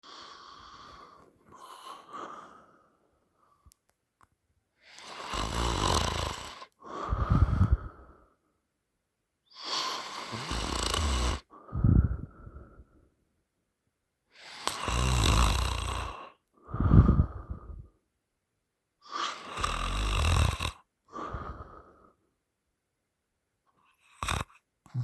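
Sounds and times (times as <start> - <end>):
person snoring loudly: 5.0 - 8.0, 9.6 - 12.1, 14.4 - 17.7, 19.1 - 21.8, 24.0 - 25.0.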